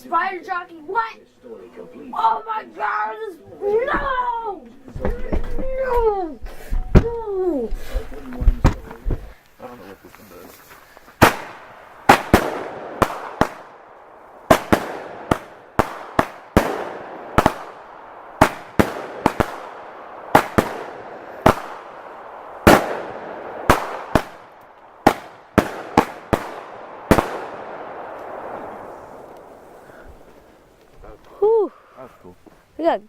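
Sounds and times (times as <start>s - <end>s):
fireworks bangs: 11.2s - 31.2s.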